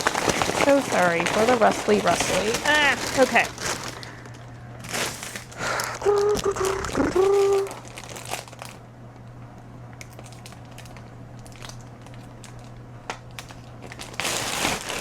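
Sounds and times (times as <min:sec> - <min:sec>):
bags rustling and crinkling: 0:00.0 - 0:08.8, 0:13.3 - 0:15.0.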